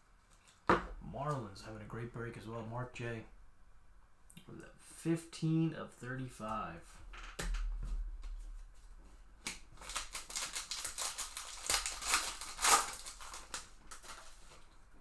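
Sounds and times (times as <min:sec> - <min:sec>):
cards flipped through by hand: 0:09.4 - 0:14.6.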